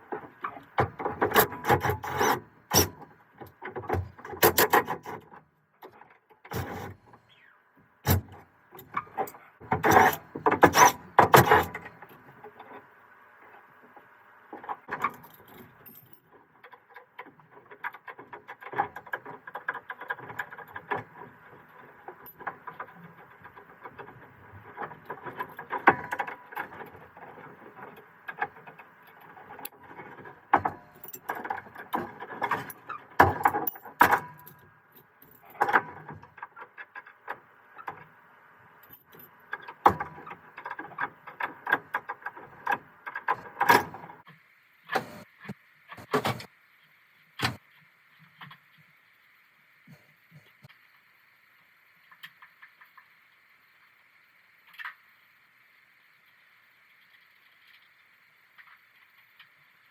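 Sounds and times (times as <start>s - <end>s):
hand tools and metal parts clinking: 14.6s - 38.0s.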